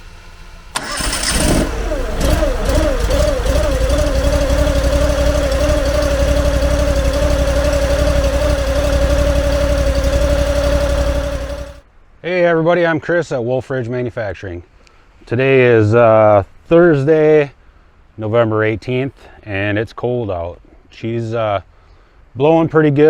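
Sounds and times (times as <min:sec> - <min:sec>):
engine starting and running: 0:00.0 - 0:11.8.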